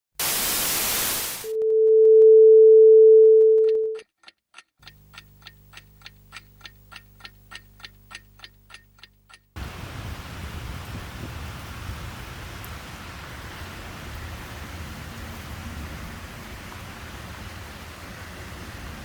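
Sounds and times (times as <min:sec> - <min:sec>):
hiss: 0:00.2 - 0:01.5
clock ticking: 0:04.8 - 0:09.6.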